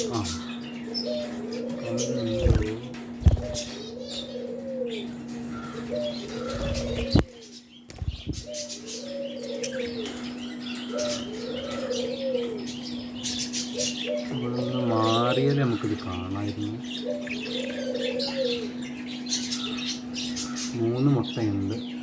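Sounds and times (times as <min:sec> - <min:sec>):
small parrots chirping: 0:00.0 - 0:04.4, 0:05.0 - 0:20.8
low rising and falling bird call: 0:00.0 - 0:15.6, 0:16.8 - 0:20.8
low hum: 0:01.2 - 0:04.0.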